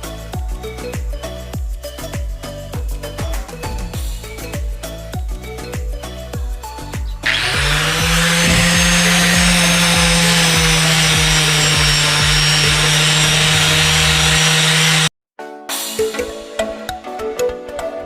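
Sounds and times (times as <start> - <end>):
background music with steady beat: 0.0 - 13.8, 14.8 - 18.0
electric buffing tool humming: 7.2 - 15.1.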